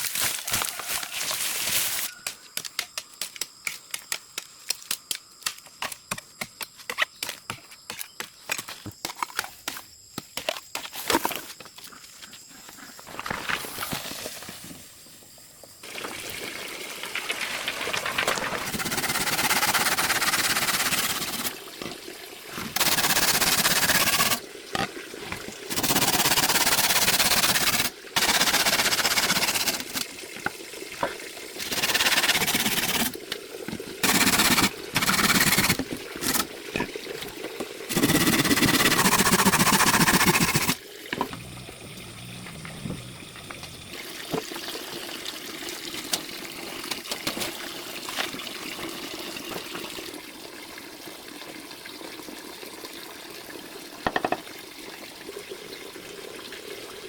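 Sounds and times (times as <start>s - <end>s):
water sounds: 15.8s - 50.8s.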